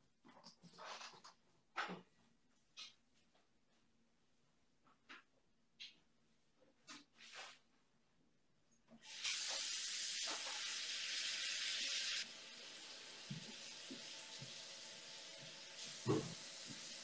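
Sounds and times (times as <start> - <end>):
steady hiss: 9.0 - 17.0.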